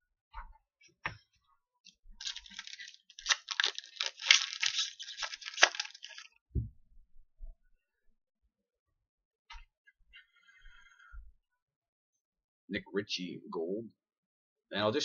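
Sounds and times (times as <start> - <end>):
foil wrapper tearing and crinkling: 2.2 - 6.3.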